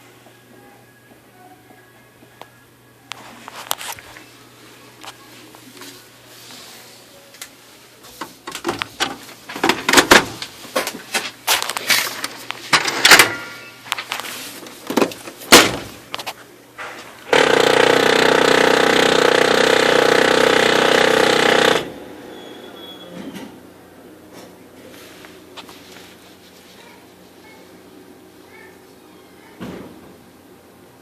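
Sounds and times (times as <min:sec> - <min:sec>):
printer mechanism grinding: 0:17.2 - 0:22.0.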